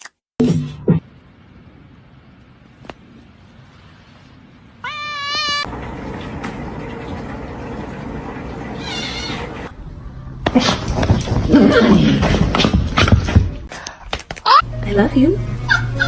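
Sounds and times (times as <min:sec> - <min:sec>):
cat meowing: 0:04.8 - 0:05.7.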